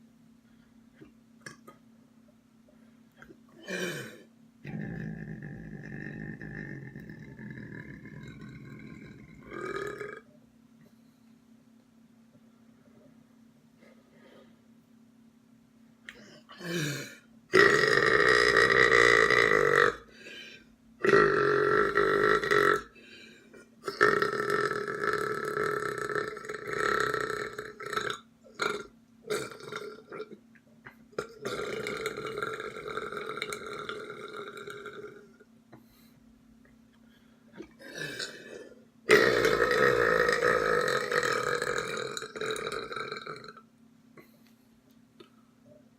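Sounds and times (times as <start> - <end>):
person belching: 3.6 - 10.3, 16.1 - 20.2, 21.0 - 23.0, 23.8 - 30.4, 31.2 - 35.4, 37.6 - 43.6.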